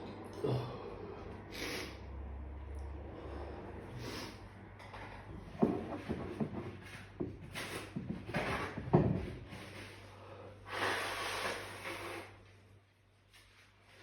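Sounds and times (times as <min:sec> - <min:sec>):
person breathing hard through nose: 0:00.4 - 0:02.2, 0:03.1 - 0:04.5.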